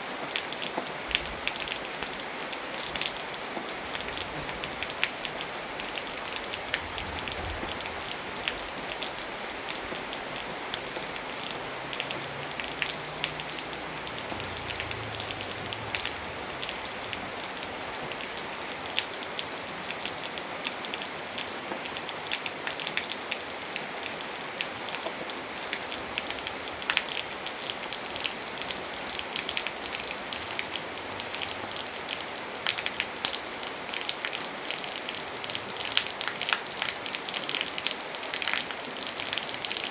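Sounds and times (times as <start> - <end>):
steady rain: 0.0 - 39.9
low rumble: 6.6 - 8.4.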